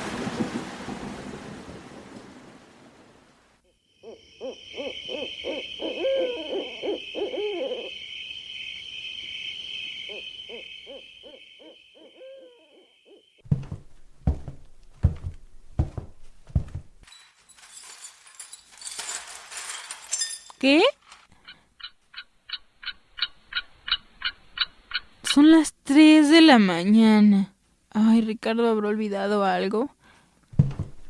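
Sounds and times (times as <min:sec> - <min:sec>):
night insects chirring: 0:03.6 - 0:13.4
owl hooting: 0:04.0 - 0:13.4
loud knocks on door: 0:30.6 - 0:31.0.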